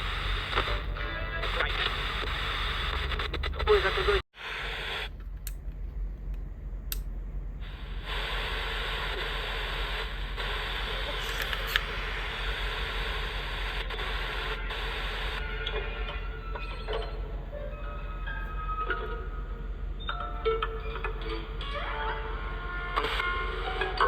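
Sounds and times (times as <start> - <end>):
radio static hiss: 0.0 - 5.2, 7.6 - 16.6.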